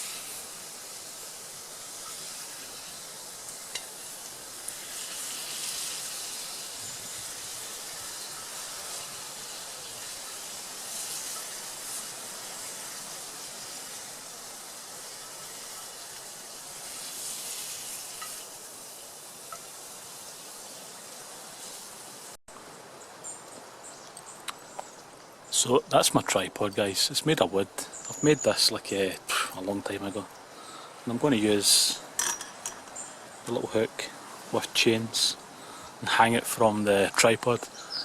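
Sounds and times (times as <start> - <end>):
food sizzling in a skillet: 0.0 - 22.4.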